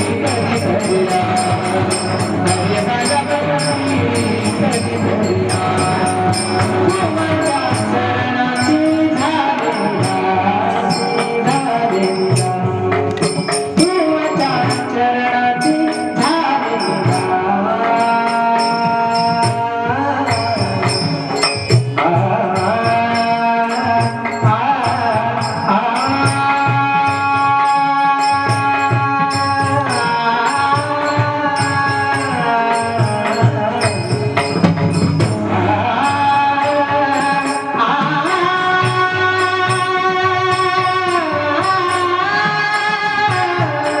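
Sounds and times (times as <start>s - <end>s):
devotional melody with sliding notes: 0.0s - 44.0s
drum beat: 0.0s - 44.0s
small hand cymbals: 0.0s - 44.0s.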